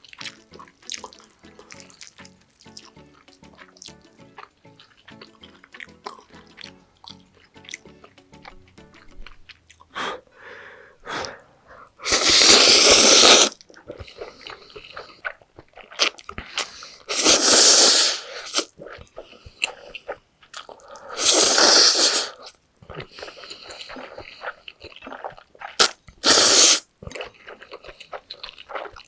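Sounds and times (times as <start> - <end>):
noodles slurped: 0.0 - 7.9, 12.0 - 29.0
wet chewing: 0.0 - 10.0, 11.2 - 29.0
faint background music: 0.0 - 15.2.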